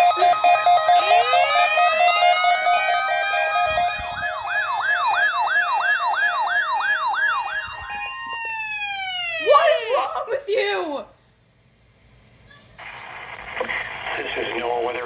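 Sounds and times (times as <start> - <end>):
siren wailing: 0.0 - 10.2.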